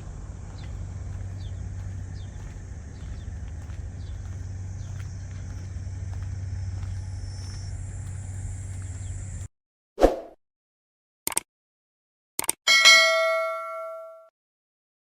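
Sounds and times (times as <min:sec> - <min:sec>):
harvester engine rumbling: 0:00.0 - 0:09.5.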